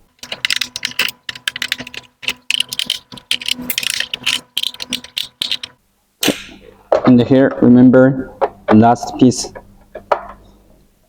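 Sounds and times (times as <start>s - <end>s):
screwdriver clicking and rattling: 0.2s - 5.8s.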